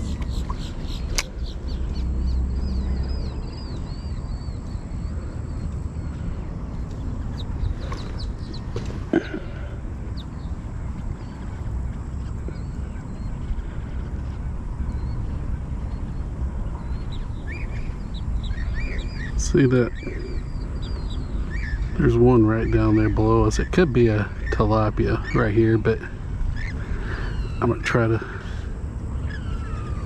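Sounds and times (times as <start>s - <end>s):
small birds chirping: 0.0s - 30.0s
wind rumble on microphone: 0.0s - 30.0s.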